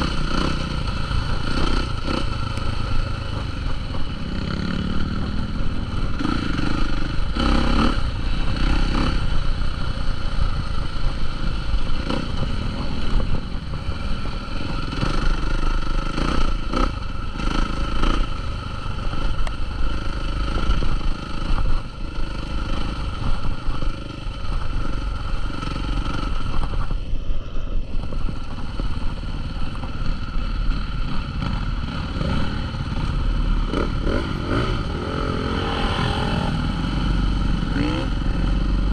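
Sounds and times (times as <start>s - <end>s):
dirt bike engines revving: 0.0s - 27.1s, 27.9s - 38.9s.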